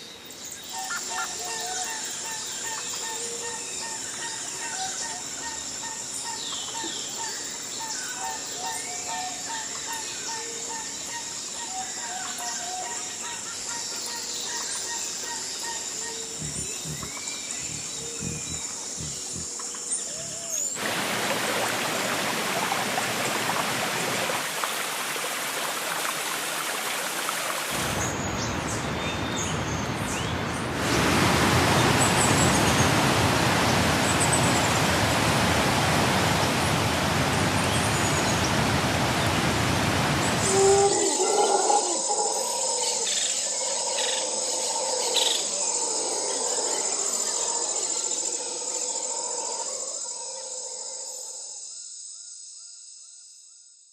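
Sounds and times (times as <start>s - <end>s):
high insect drone: 0.8s - 28.8s, 31.3s - 53.7s
bird chirps: 14.4s - 20.8s.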